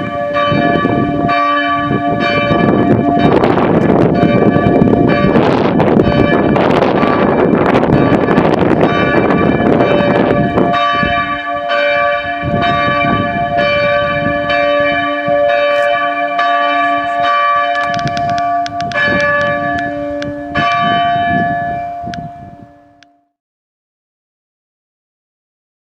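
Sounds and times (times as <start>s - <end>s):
church bells ringing: 0.0s - 23.2s.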